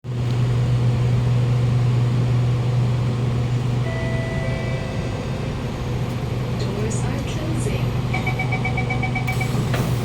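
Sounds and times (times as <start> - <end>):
train car hum and rumble: 0.0 - 10.0.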